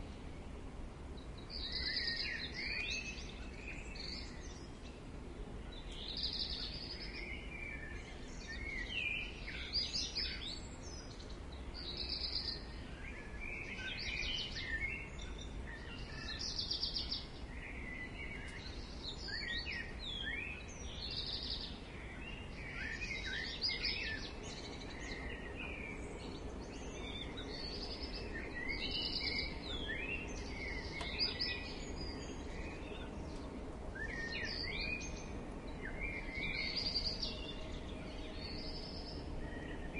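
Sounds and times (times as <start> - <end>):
birds singing and chirping: 0.0 - 39.9
low background noise: 0.0 - 39.9.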